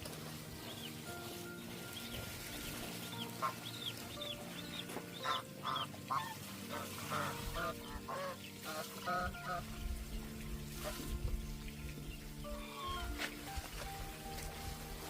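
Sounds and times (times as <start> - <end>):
geese honking: 0.0 - 11.1, 12.5 - 13.8
background music: 0.0 - 15.0
birds peeping: 0.0 - 15.0.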